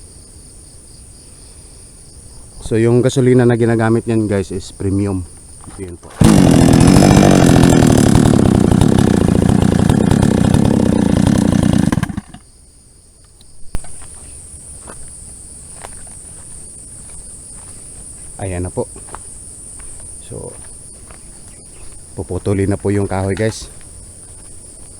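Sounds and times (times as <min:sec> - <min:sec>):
chainsaw engine running: 0:06.0 - 0:12.4.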